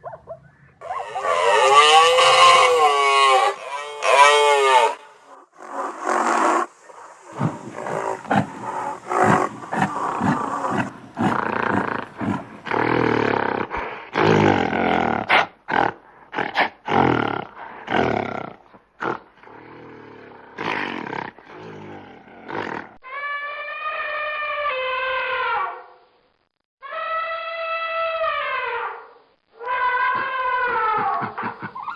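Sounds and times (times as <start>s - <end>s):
long horn-like call: 0.8s - 6.7s, 7.3s - 13.2s
short rough animal calls: 7.3s - 13.2s.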